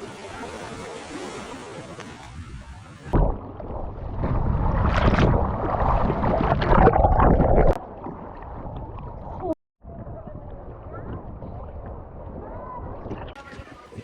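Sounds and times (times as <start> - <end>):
churning water: 0.0 - 14.0
wind buffeting microphone: 8.5 - 14.0.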